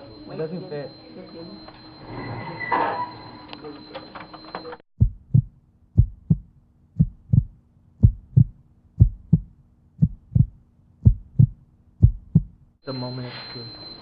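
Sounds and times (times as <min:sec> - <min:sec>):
heartbeat thumps: 0:05.0 - 0:12.7.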